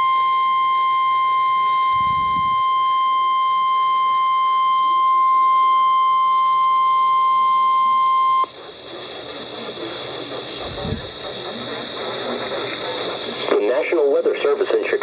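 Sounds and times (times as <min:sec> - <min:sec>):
loud high-pitched alarm tone: 0:00.0 - 0:15.0
faint radio hiss: 0:08.4 - 0:15.0.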